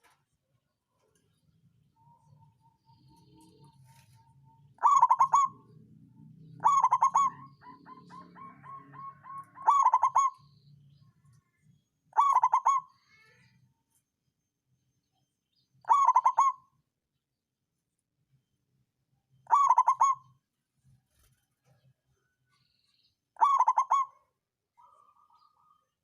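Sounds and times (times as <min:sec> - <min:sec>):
dove cooing trilled coos: 0:04.5 - 0:05.8, 0:06.4 - 0:10.4, 0:12.1 - 0:12.9, 0:15.8 - 0:16.7, 0:19.5 - 0:20.3, 0:23.4 - 0:25.8.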